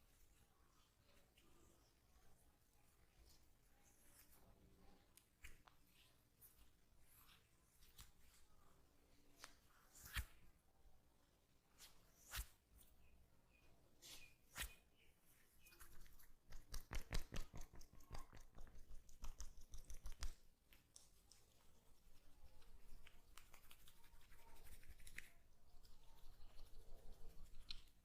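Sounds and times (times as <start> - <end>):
fingers rubbing through hair: 15.6 - 20.4, 21.0 - 28.0.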